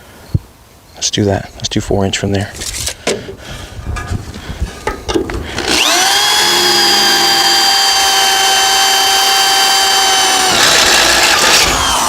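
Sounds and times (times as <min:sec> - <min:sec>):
power drill whining: 0:04.6 - 0:12.0.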